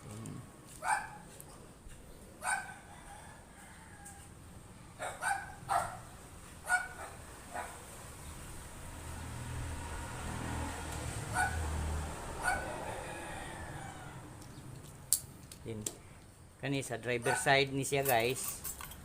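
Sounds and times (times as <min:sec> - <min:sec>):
animal yelps: 0:12.4 - 0:13.0.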